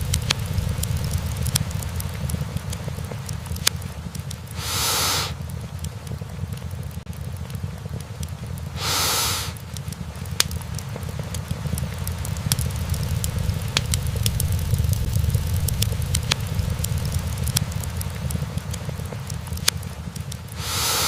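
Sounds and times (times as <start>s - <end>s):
fire flames rumbling: 0.0s - 21.0s
logs crackling and popping: 0.0s - 21.0s
short hiss: 4.5s - 5.4s, 8.8s - 9.6s, 20.6s - 21.0s.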